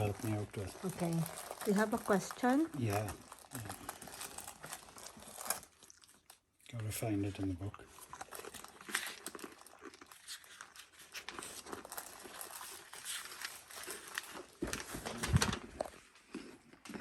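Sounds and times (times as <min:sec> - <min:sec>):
paper pages rustling and flipping: 0:10.2 - 0:16.2.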